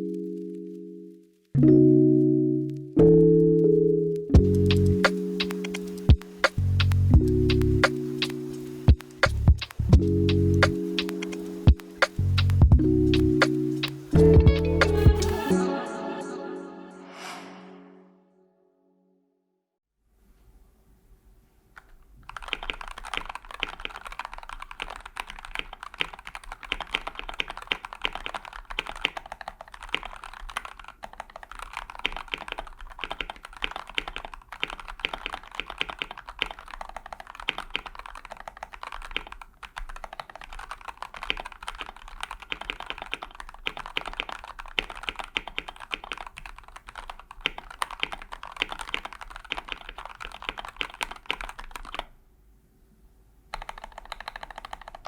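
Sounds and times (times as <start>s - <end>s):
mechanical keyboard typing: 4.4s - 15.5s, 21.8s - 52.2s, 53.5s - 55.0s.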